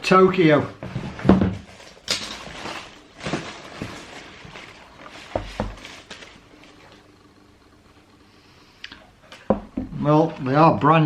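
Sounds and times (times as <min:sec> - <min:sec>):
paper rustling: 0:01.6 - 0:07.0.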